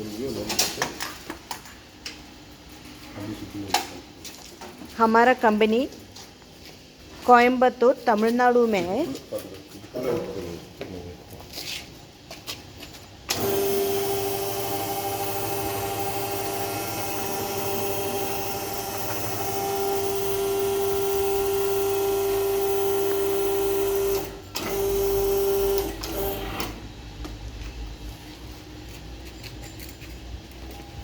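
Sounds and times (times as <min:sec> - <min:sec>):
hydraulic pump motor whine: 0:13.3 - 0:26.9.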